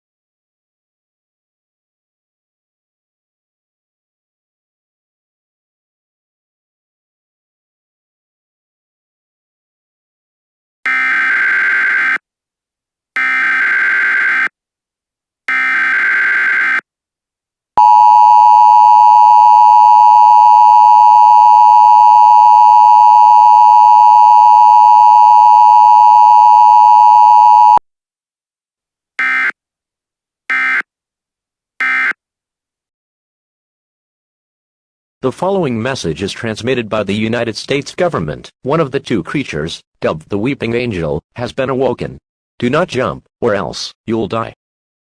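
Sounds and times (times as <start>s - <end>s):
two-tone attention signal: 17.8s - 27.8s.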